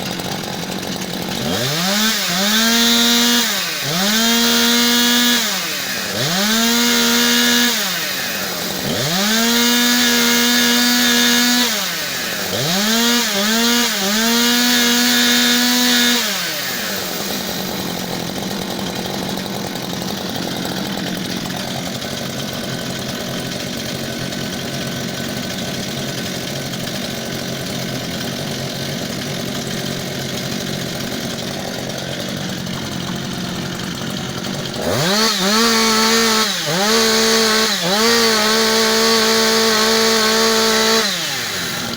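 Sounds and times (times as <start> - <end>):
chainsaw engine revving: 0.0 - 41.9.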